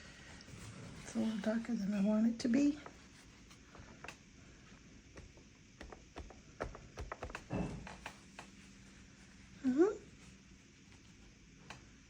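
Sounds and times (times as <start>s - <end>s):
paintbrush tapping on paper: 5.1s - 8.6s.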